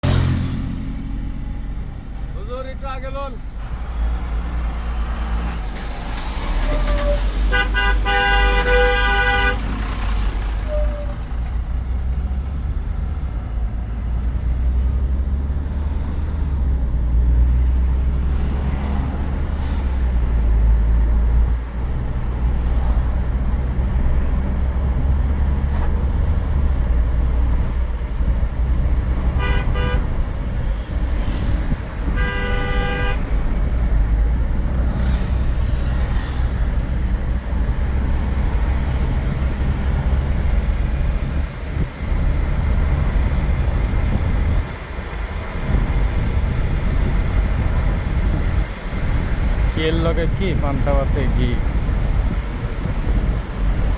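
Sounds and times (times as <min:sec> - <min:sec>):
car driving rumble: 0:00.0 - 0:53.9
car horn honking: 0:06.8 - 0:11.0, 0:29.3 - 0:30.2, 0:32.1 - 0:33.4.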